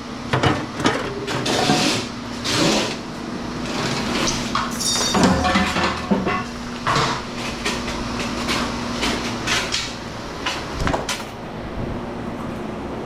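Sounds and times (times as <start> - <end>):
steady low hum: 0.0 - 13.0
metal pieces clanking: 4.2 - 8.0.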